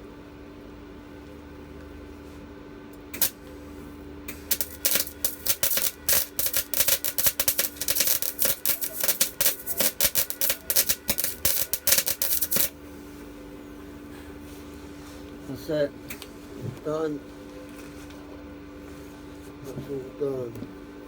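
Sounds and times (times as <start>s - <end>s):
steady low hum: 0.0s - 21.0s
welding arc crackling: 3.2s - 3.4s, 4.3s - 12.8s.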